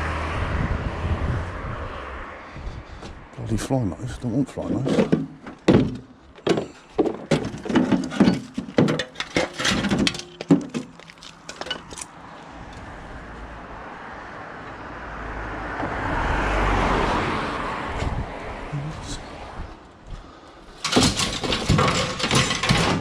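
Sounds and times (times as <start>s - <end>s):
vehicle rumbling: 0.0s - 23.0s
scrap items clattering: 4.7s - 12.0s, 20.8s - 23.0s.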